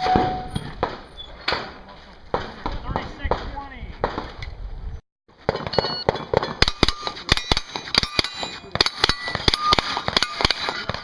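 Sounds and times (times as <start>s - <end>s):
rapid gunshots: 5.5s - 11.0s
steel targets ringing: 5.6s - 10.9s.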